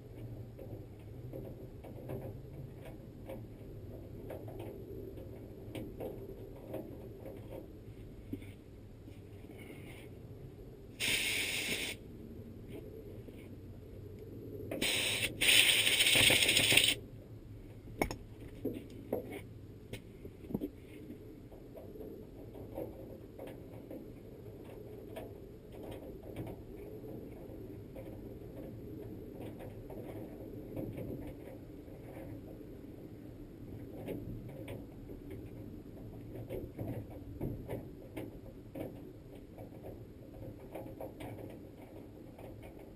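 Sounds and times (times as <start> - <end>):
loud hissing: 11.0 - 12.0, 14.8 - 17.0.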